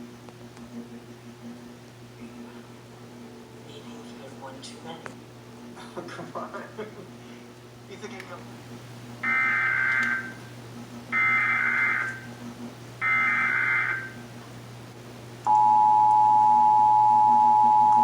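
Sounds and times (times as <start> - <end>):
two-tone attention signal: 15.5 - 18.0.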